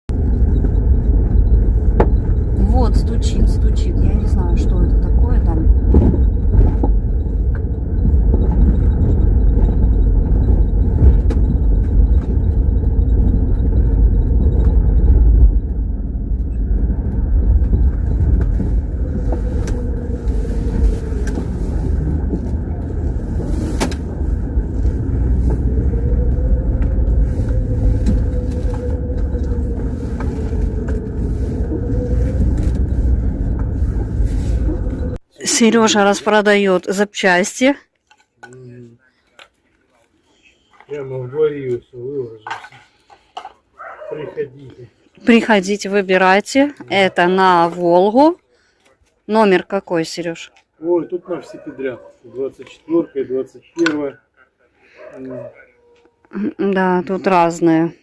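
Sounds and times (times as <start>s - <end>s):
wavering hum: 0.1s - 36.3s
car engine and road rumble: 0.1s - 37.4s, 38.7s - 48.4s, 49.2s - 54.4s.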